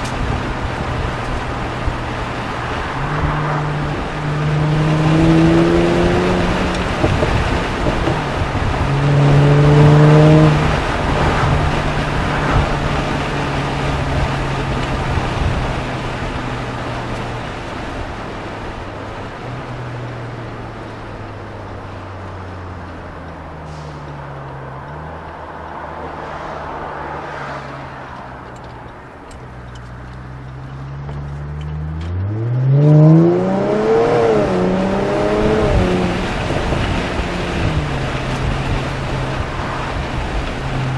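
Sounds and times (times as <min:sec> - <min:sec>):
car engine pulling hard: 0:00.0 - 0:40.9
road noise: 0:00.0 - 0:40.9.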